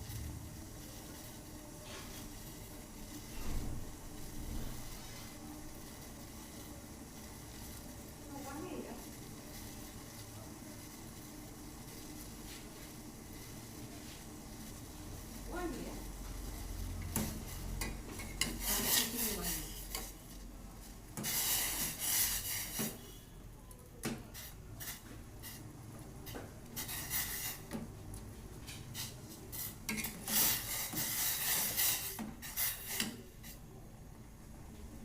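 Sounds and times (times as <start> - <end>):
spoon scraping in a pot: 17.1 - 20.4, 21.2 - 23.2, 24.3 - 25.6, 26.2 - 27.8, 28.6 - 33.6.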